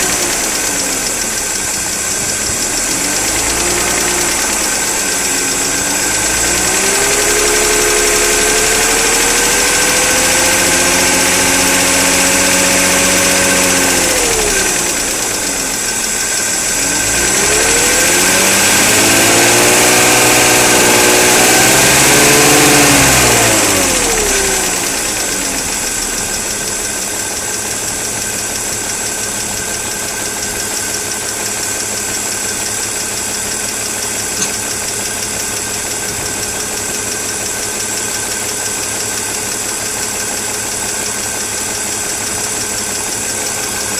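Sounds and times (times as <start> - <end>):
car engine revving and idling: 0.0 - 43.9.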